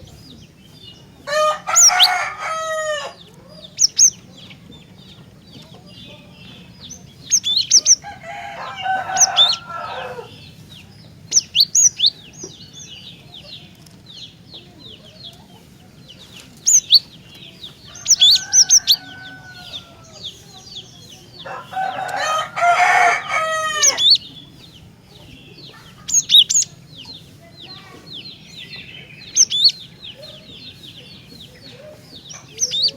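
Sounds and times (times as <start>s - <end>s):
bird singing high chirps: 0.0s - 32.9s
rooster crowing: 1.2s - 3.3s, 7.8s - 10.5s, 17.9s - 20.3s, 21.4s - 24.2s.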